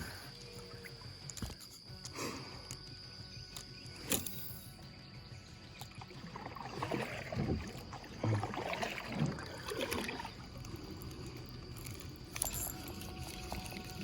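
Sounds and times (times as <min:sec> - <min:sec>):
water sloshing around kayak: 0:05.3 - 0:14.0.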